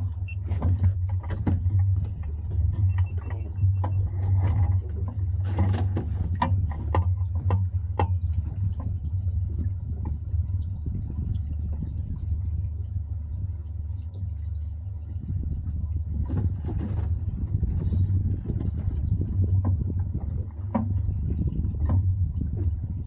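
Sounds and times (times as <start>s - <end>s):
boat engine droning: 0.0s - 23.0s
sharp clicks and knocks: 0.4s - 9.0s, 19.6s - 21.0s.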